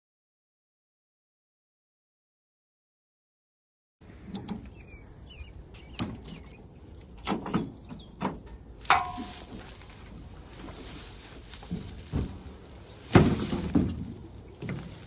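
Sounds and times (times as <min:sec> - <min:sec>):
knocks and thuds: 0:11.6 - 0:15.0.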